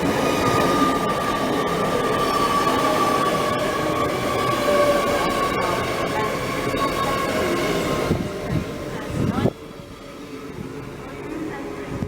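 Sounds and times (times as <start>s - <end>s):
high-pitched train squeal: 0.0s - 9.4s
train rumble: 0.0s - 12.0s.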